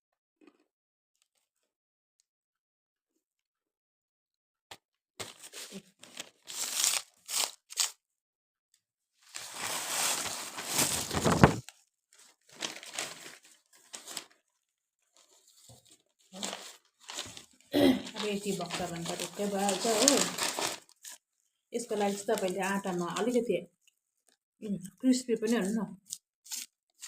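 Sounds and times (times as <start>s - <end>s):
crisp snacks rustling and crunching: 5.2s - 8.0s, 9.2s - 14.4s, 15.2s - 21.2s, 21.8s - 23.4s, 25.5s - 27.0s.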